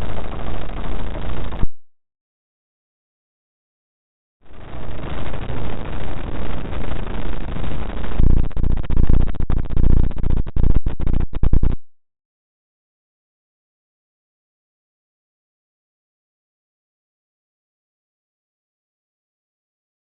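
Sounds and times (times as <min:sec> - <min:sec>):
buzzing synthetic noise: 0:00.0 - 0:01.8, 0:04.5 - 0:11.8
harsh bass-heavy crackle: 0:00.0 - 0:01.8, 0:04.4 - 0:11.8.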